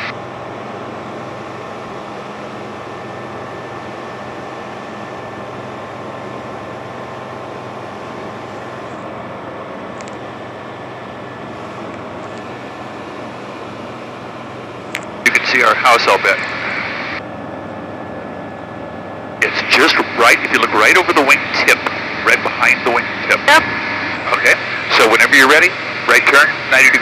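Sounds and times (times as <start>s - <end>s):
airplane engine and propeller drone: 0.0s - 27.0s
airflow noise: 19.4s - 27.0s.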